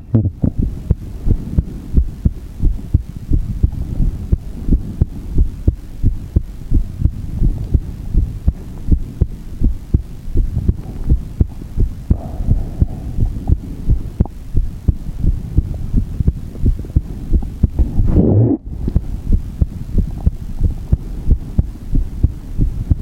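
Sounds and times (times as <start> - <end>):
heartbeat thumps: 0.0 - 23.0.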